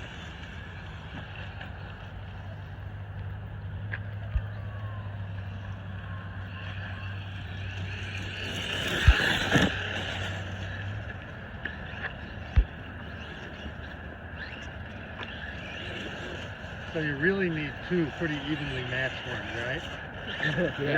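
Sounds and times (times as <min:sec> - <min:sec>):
toy truck motor whirring: 0:06.4 - 0:20.9.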